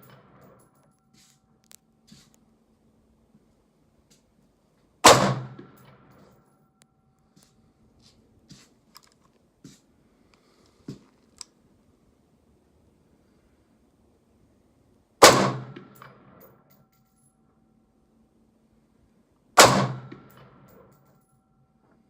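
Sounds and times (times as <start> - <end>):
gunshot with echo: 5.0 - 6.0, 15.2 - 16.3, 19.6 - 20.5.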